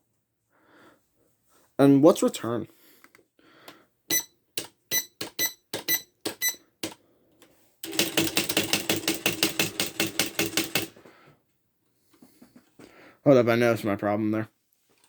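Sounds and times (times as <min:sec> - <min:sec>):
typewriter strikes: 0:07.8 - 0:11.0.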